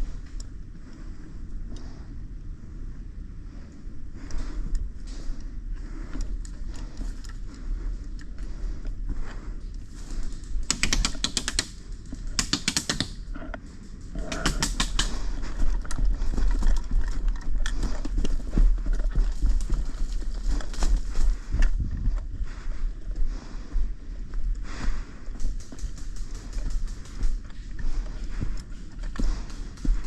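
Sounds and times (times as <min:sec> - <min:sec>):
steady low rumble: 0:00.0 - 0:10.9, 0:11.5 - 0:12.4, 0:13.0 - 0:30.0
rustling and clicking of movement: 0:00.0 - 0:30.0
airsoft guns firing bursts: 0:10.6 - 0:13.2, 0:14.3 - 0:15.2.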